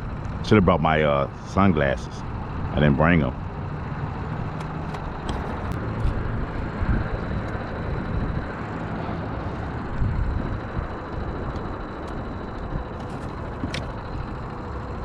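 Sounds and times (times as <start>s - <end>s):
boat motor rumbling: 0.0s - 15.0s
wind buffeting microphone: 4.1s - 15.0s.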